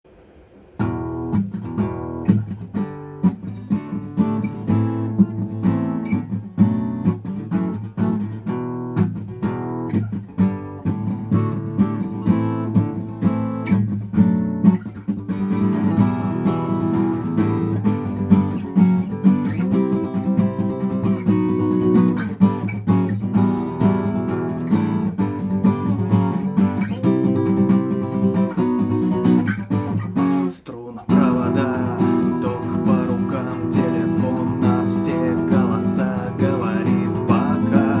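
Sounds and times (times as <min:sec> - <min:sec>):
acoustic guitar strumming chords: 0:00.2 - 0:38.0.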